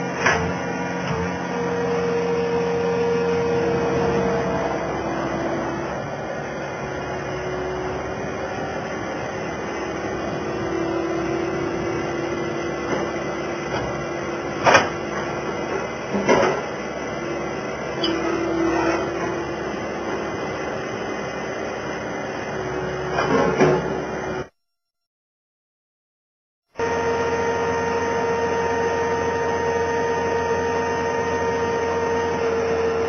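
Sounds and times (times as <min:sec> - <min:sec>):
mechanical hum: 0:00.0 - 0:24.5.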